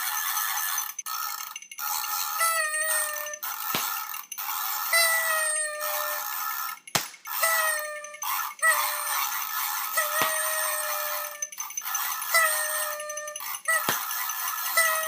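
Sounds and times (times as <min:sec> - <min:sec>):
party horns honking: 0:02.3 - 0:03.9, 0:04.9 - 0:06.3, 0:07.3 - 0:09.2, 0:09.8 - 0:11.6, 0:12.2 - 0:15.0
sharp snaps: 0:06.9 - 0:07.3.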